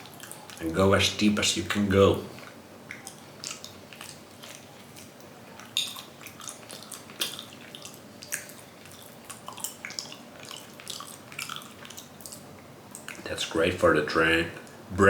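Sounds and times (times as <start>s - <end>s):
person chewing wetly: 0.0s - 0.9s, 2.3s - 13.4s
faint room hiss: 0.0s - 15.0s.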